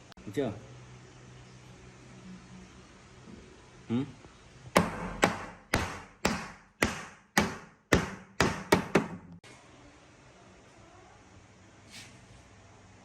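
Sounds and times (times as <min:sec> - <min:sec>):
hammer blows ringing: 0:04.8 - 0:09.2.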